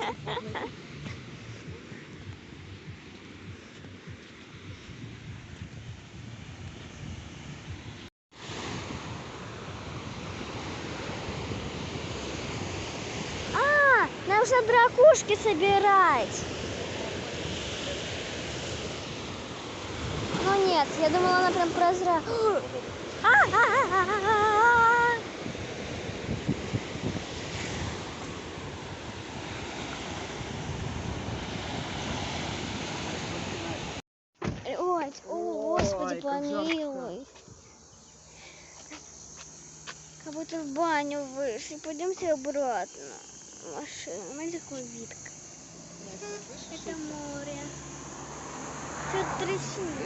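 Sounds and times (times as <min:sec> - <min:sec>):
sea surf washing on shore: 0:00.0 - 0:34.0, 0:38.3 - 0:50.0
wind rumbling on microphone: 0:00.0 - 0:34.0.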